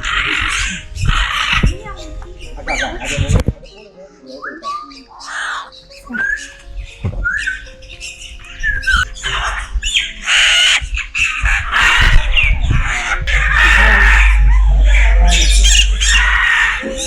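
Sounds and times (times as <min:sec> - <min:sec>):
macaw squawking: 0:00.0 - 0:17.0
low rumble: 0:10.8 - 0:17.0.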